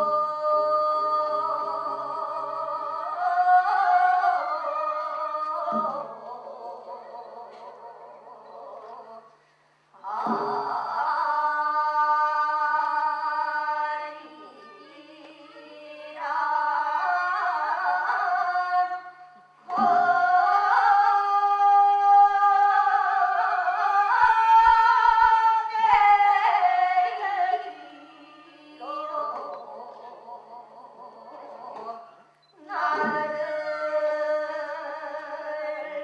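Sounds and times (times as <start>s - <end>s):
folk singing in long notes: 0.0s - 9.3s, 10.0s - 36.0s.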